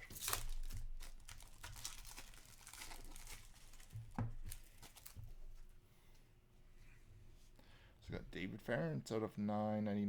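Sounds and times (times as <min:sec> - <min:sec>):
packaging tearing and crinkling: 0:00.0 - 0:05.2.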